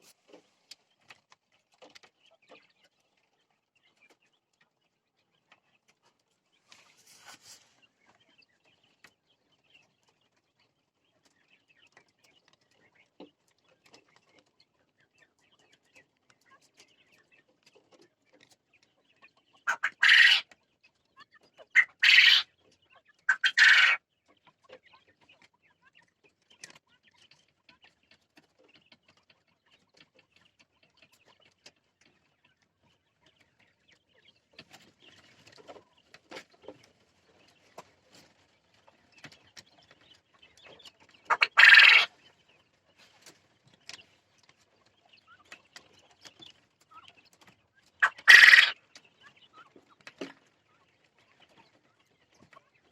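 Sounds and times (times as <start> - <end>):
rustling: 6.6 - 7.9
quail calling: 19.5 - 20.6, 21.6 - 22.6, 23.2 - 24.0, 40.6 - 42.3, 48.0 - 50.3.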